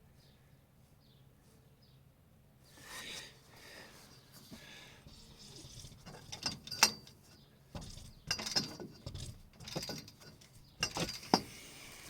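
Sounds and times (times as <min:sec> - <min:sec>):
metal tools clinking: 0:05.8 - 0:07.2, 0:07.8 - 0:11.6.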